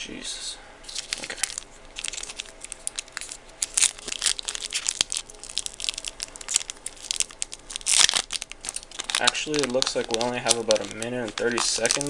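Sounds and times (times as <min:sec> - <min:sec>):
foil wrapper crinkling and tearing: 0:00.9 - 0:12.0.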